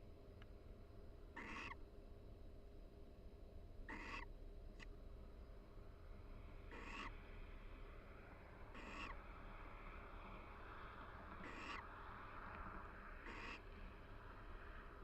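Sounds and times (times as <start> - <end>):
owls giving soft calls: 1.4 - 1.8, 3.9 - 4.3, 6.7 - 7.1, 8.8 - 9.2, 11.4 - 11.8, 13.2 - 13.6.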